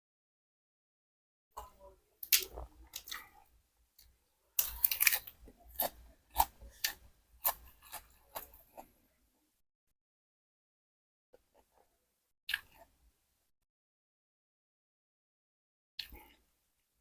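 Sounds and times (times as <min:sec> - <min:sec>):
close chewing with wet mouth clicks: 0:04.0 - 0:08.9.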